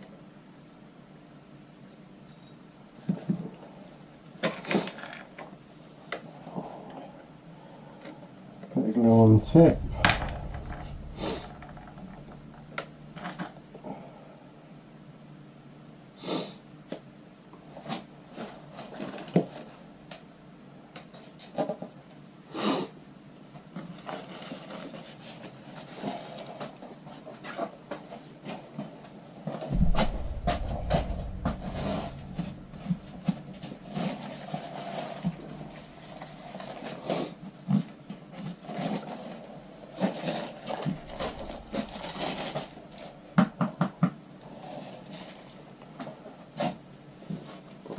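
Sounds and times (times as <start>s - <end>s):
low rumble: 9.2s - 13.8s, 29.7s - 34.0s, 40.8s - 43.4s.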